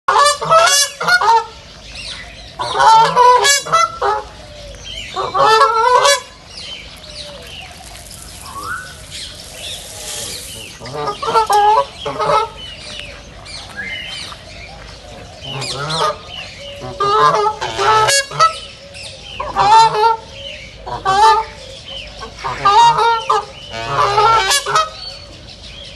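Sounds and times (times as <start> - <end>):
ducks quacking: 0.1 - 1.7, 2.6 - 4.4, 5.1 - 6.5, 7.6 - 12.8, 15.1 - 18.7, 19.4 - 21.5, 22.2 - 25.0
faint bird calls: 2.0 - 23.4.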